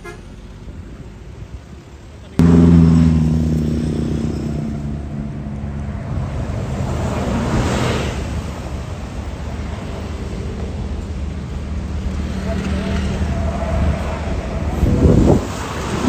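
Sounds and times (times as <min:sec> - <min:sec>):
bus engine running: 0:00.0 - 0:16.0.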